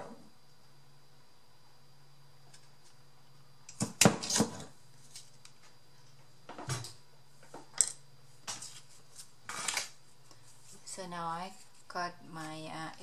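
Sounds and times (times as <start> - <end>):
craft tools and paper clattering: 8.4 - 10.0.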